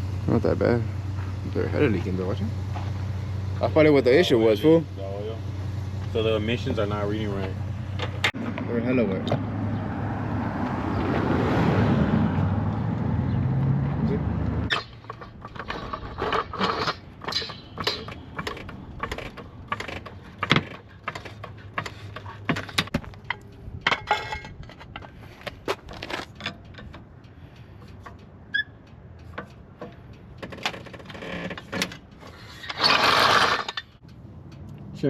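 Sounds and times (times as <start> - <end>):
hand tools clanking on metal: 14.7 - 27.2.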